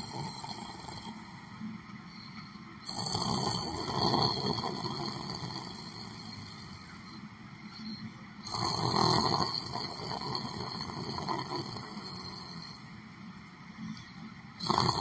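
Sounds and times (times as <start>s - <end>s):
person snoring: 0.0s - 1.3s, 2.8s - 6.8s, 8.4s - 12.8s, 14.6s - 15.0s.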